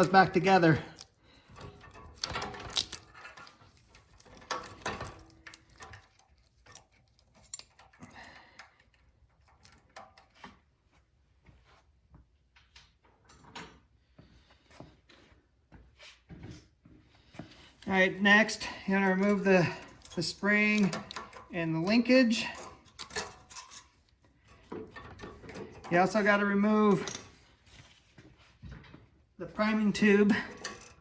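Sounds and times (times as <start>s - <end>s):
screwdriver and small parts rattling: 0.0s - 10.7s, 17.4s - 31.0s.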